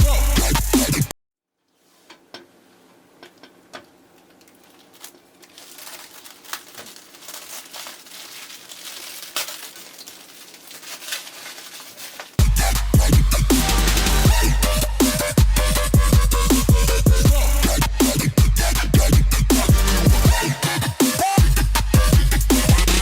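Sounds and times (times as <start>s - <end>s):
faint crinkling and crackling: 1.6s - 12.4s.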